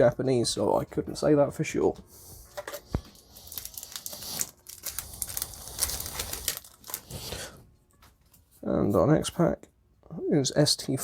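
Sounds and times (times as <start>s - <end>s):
foil wrapper crinkling: 2.6s - 8.5s.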